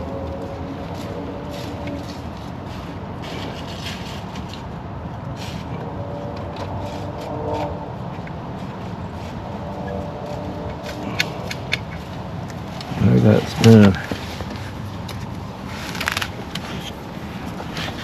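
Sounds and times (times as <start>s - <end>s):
low vehicle rumble: 0.0s - 18.0s
clicks and scrapes of small parts: 10.2s - 12.9s, 13.6s - 17.0s.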